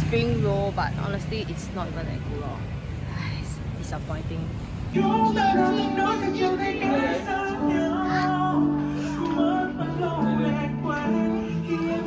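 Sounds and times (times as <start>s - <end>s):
woman singing: 5.0s - 12.0s.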